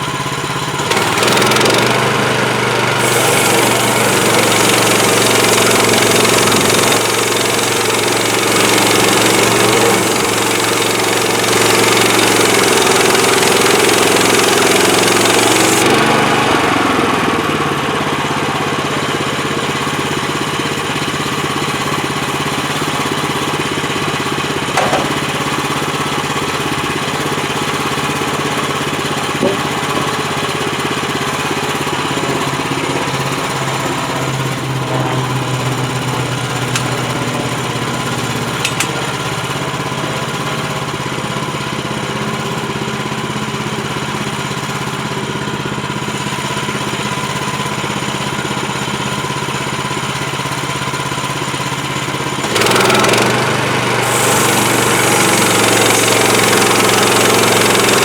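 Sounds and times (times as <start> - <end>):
petrol engine running: 0.0 - 58.0
loud high hiss: 3.0 - 15.9, 54.0 - 58.0.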